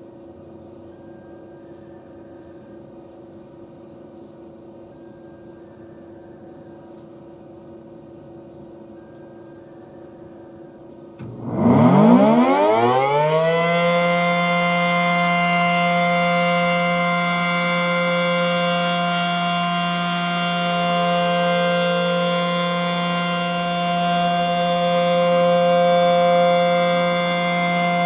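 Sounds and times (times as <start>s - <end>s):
faint hum: 0.0s - 12.4s
siren winding up: 11.2s - 28.0s.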